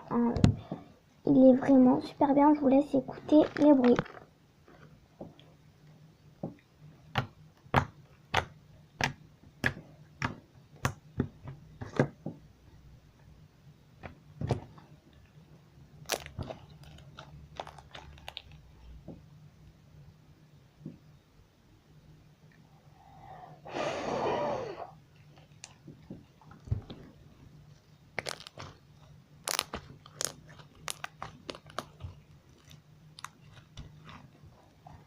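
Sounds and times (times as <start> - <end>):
crunchy slime popping: 16.0 - 18.8, 28.1 - 34.4.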